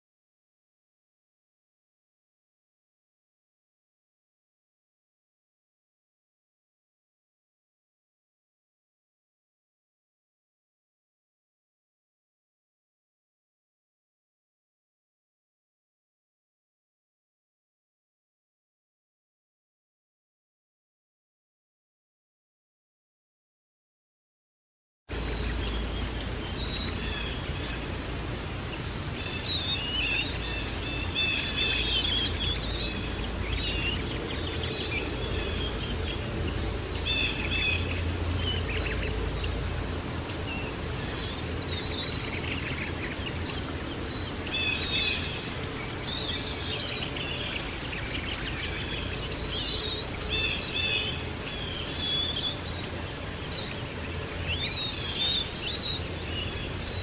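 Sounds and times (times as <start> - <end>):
low background rush: 25.1 - 57.0
songbirds chirping: 25.1 - 57.0.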